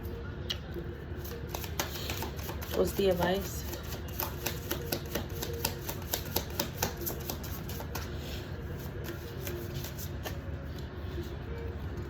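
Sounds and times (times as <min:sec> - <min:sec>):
cards being shuffled: 0:01.2 - 0:03.0, 0:03.6 - 0:08.3.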